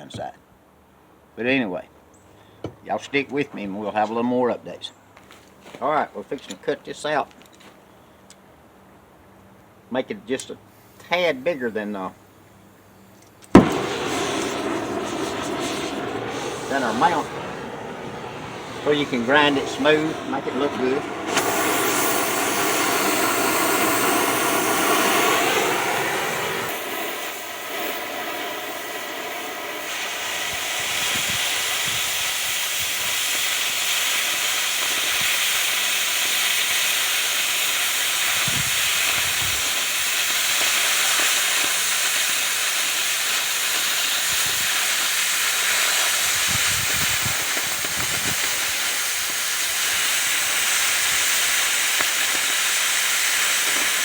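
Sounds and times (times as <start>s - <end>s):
cutting torch hissing: 13.4s - 54.0s.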